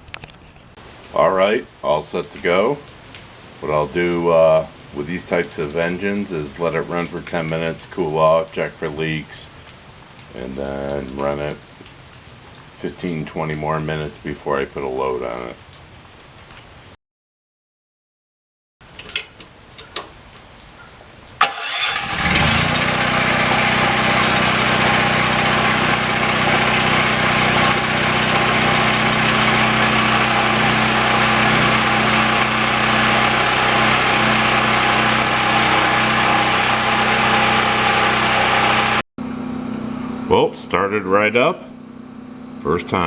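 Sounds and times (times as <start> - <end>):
generator starter click: 21.4 - 22.7
generator engine cranking and running: 21.4 - 39.0.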